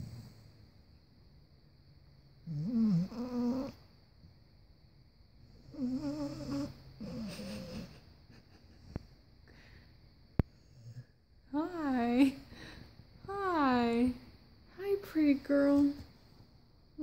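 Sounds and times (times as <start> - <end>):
pet snoring: 0.0 - 0.5, 2.4 - 3.8, 5.5 - 8.0, 10.5 - 11.2.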